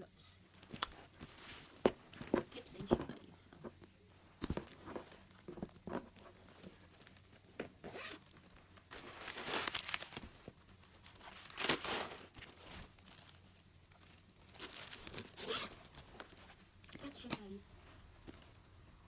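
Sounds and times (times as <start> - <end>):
bag zipper being pulled: 7.8 - 8.3, 15.1 - 15.9.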